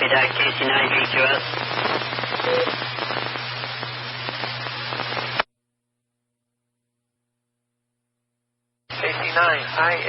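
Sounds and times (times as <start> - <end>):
radio static hiss: 0.0 - 5.5, 8.9 - 10.0.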